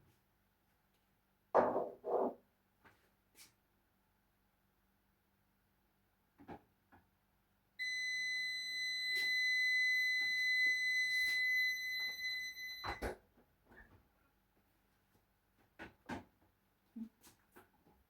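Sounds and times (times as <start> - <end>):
high electronic beep tone: 7.8 - 13.0.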